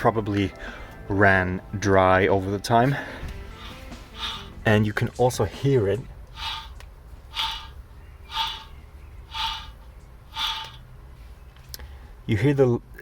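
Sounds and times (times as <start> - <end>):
wheel bearing rasping scrape: 2.9 - 4.8, 6.2 - 10.9.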